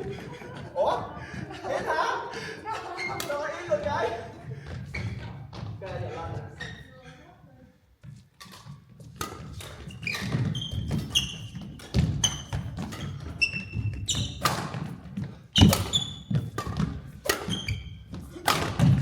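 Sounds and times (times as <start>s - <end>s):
shoes squeaking on court: 4.7s - 5.8s, 6.5s - 7.0s, 8.0s - 18.3s
racket hitting shuttlecock: 8.4s - 15.0s, 15.6s - 19.0s
footsteps thudding: 15.2s - 17.0s.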